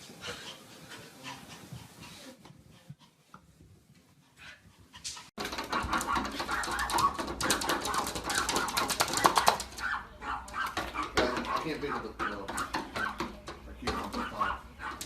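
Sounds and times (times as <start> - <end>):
dog sounds: 0.3 - 15.0
rapid crackly noise: 5.0 - 15.0.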